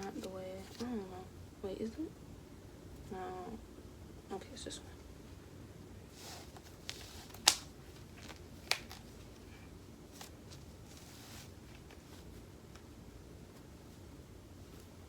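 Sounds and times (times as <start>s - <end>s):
soft rustling: 0.0s - 1.3s, 6.0s - 15.0s.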